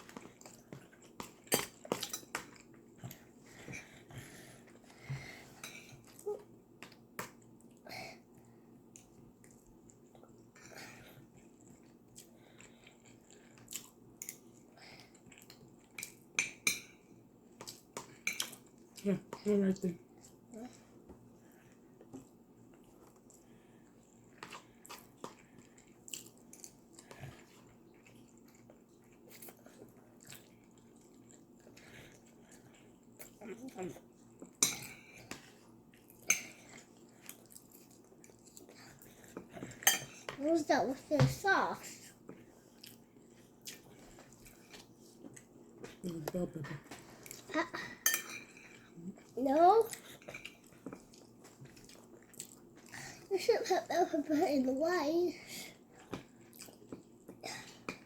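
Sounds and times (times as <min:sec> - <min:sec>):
chewing: 0:11.1 - 0:16.3, 0:21.7 - 0:40.2, 0:42.0 - 0:53.2, 0:55.9 - 0:58.0
cutlery clinking on a plate: 0:39.8 - 0:40.4, 0:48.0 - 0:48.6.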